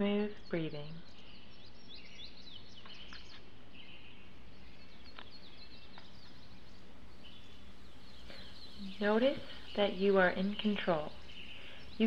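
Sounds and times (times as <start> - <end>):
small birds chirping: 0.0 - 12.0
steady low hiss: 0.0 - 12.0.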